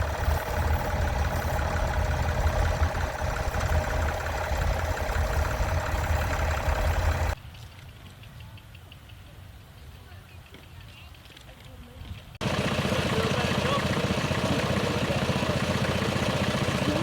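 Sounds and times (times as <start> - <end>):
tractor engine rumbling: 0.0 - 7.4, 12.2 - 17.0.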